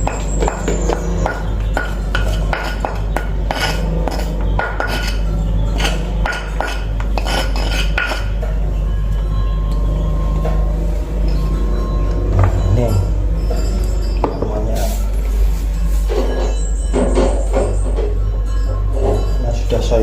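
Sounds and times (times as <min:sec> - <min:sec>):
steady low hum: 0:00.0 - 0:20.0
utensil knocking in stone mortar: 0:05.8 - 0:08.3.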